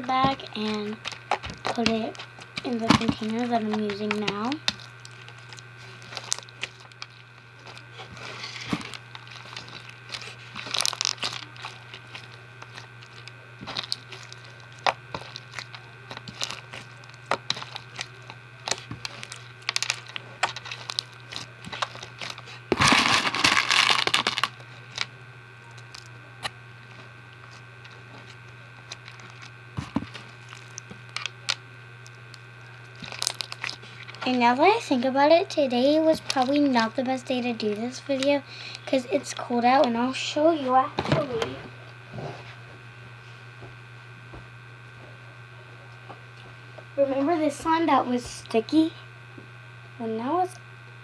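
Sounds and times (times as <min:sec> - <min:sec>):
slime with beads crunching: 0:00.0 - 0:25.1, 0:32.7 - 0:39.9
steady low hum: 0:00.0 - 0:51.0.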